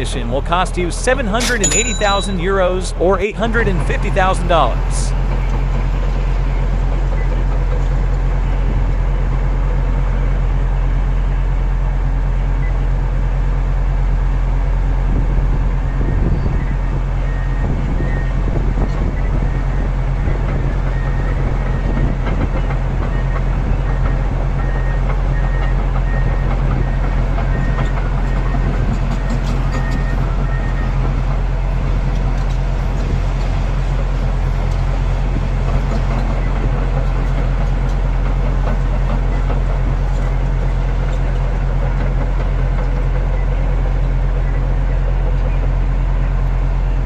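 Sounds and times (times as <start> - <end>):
bulldozer diesel engine droning: 0.0 - 47.0
faint short beeps: 1.4 - 2.7.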